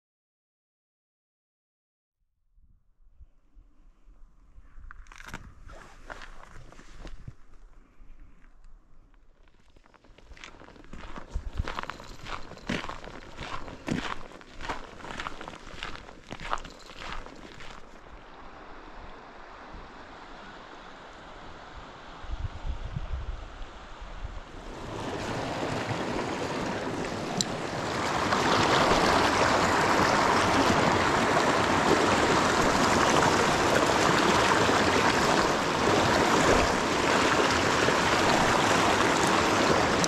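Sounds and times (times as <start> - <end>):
river water rushing over rocks: 24.6 - 40.0.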